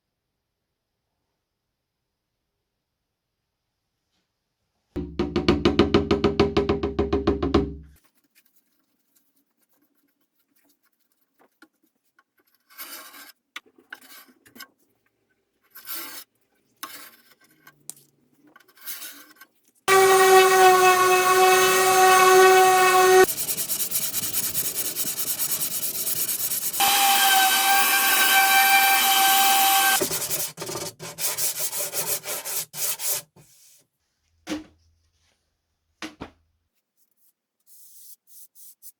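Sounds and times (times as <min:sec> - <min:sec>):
power tool whining: 0:19.9 - 0:23.3, 0:26.5 - 0:30.0
fast pulsing power tool: 0:19.9 - 0:31.0.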